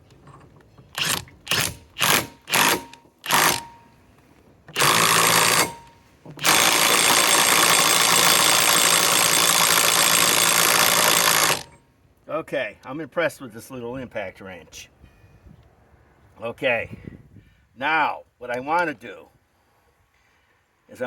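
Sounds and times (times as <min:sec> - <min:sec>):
impact wrench hammering: 0:01.0 - 0:04.0, 0:04.7 - 0:11.8.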